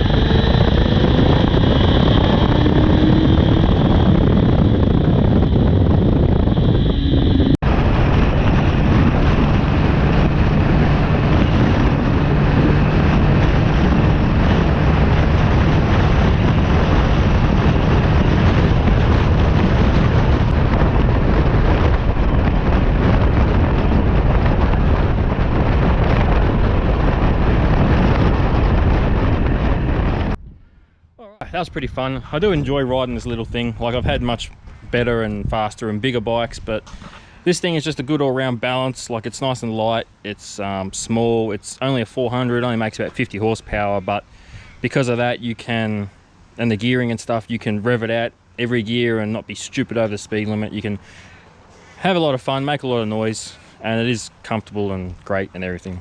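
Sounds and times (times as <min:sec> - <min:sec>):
motorcycle engine running: 0:00.0 - 0:30.3
wind noise on microphone: 0:00.0 - 0:56.0.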